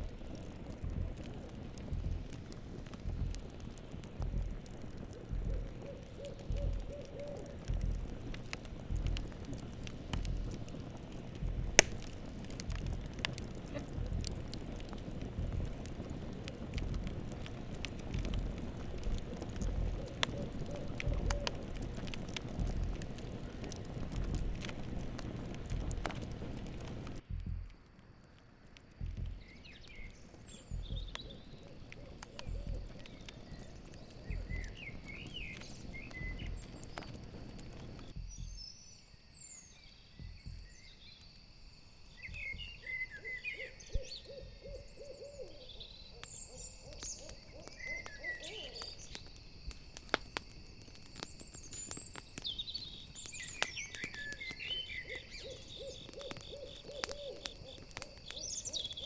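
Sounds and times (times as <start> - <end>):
low thumps: 0.0 - 27.9, 29.0 - 29.6
campfire crackling: 0.0 - 59.0
crickets chirping: 0.0 - 59.0
owl hooting: 5.0 - 8.2, 19.2 - 21.9, 30.8 - 33.2, 42.4 - 49.2, 53.4 - 59.0.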